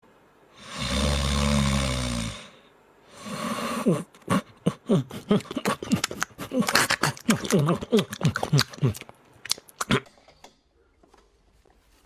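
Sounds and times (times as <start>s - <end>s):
rasping snore-like animal sound: 0.6s - 2.6s.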